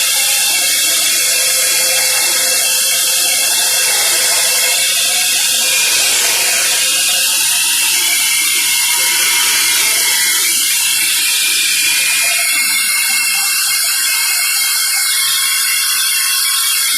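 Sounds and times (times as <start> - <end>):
band saw hissing and whirring: 0.0 - 13.0.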